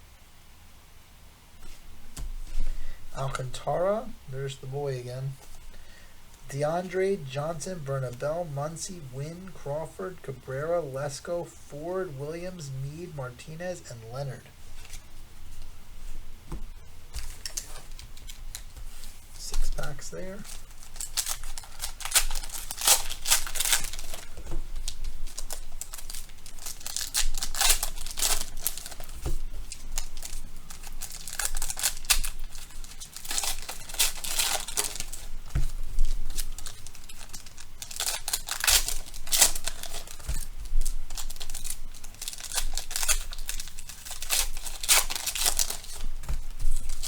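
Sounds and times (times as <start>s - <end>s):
foil wrappers tearing and crinkling: 17.2s - 47.0s.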